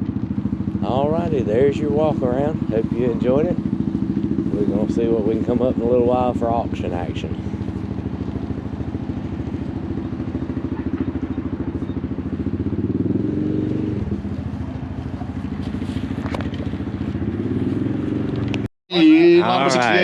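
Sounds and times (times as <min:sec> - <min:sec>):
atv engine revving: 0:00.0 - 0:20.0.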